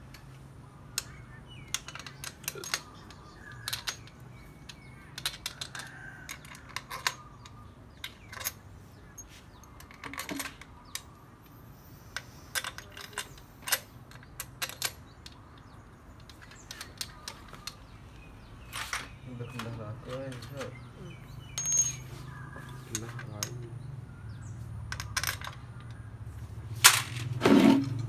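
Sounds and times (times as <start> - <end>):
metal tools clicking and clinking: 0.9 - 11.1, 12.1 - 17.9, 18.7 - 22.1, 22.9 - 23.7, 24.9 - 26.0.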